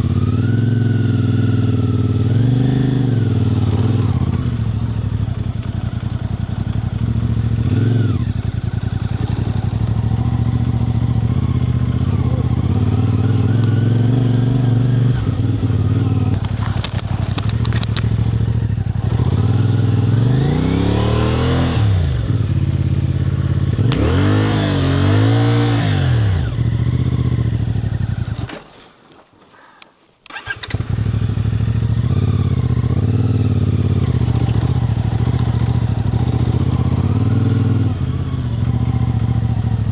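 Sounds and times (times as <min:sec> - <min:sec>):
small engine running: 0:00.0 - 0:28.7, 0:30.3 - 0:39.9.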